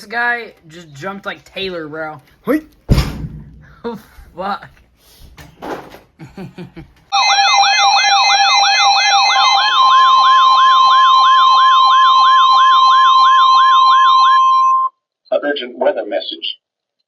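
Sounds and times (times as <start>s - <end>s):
steady alarm tones: 7.1s - 14.9s
electronic alarm warble: 7.2s - 14.9s.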